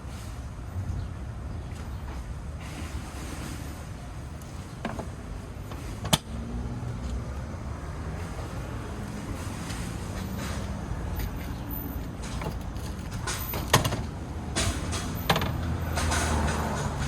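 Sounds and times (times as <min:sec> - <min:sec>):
low rumble of street traffic: 0:00.0 - 0:17.0
sharp clicks and knocks: 0:04.4 - 0:06.4, 0:12.2 - 0:17.0.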